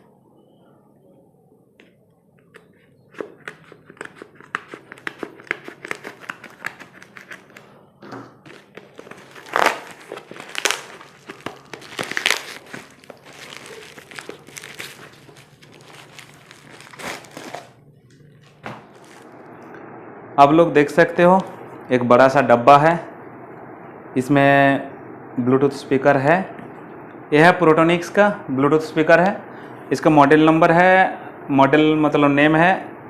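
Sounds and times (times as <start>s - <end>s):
packaging crinkling and rustling: 3.1s - 7.8s, 8.4s - 17.8s, 18.4s - 19.4s
packaging tearing: 3.7s - 7.6s, 8.5s - 17.8s, 18.9s - 19.3s.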